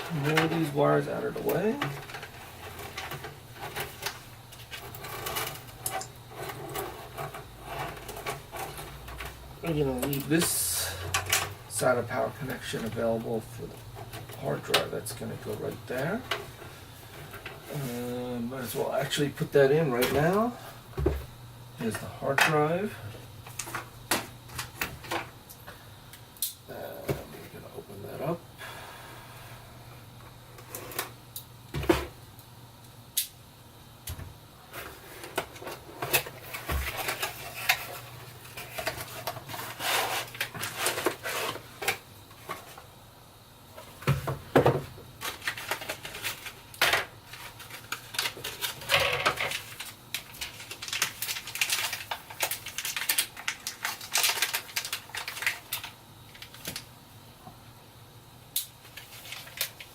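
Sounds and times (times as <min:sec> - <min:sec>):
packaging crinkling and rustling: 0:00.0 - 0:20.6, 0:34.8 - 0:42.9, 0:45.2 - 0:56.9, 0:58.7 - 0:59.9.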